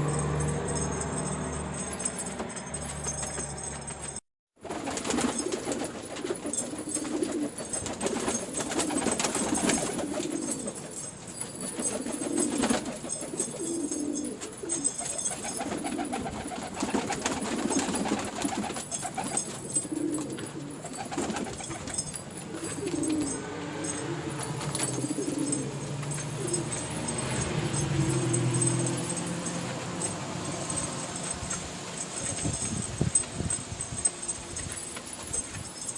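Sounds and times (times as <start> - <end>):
clicks and rustles: 2.0 - 35.9
pigeons cooing: 5.0 - 31.6.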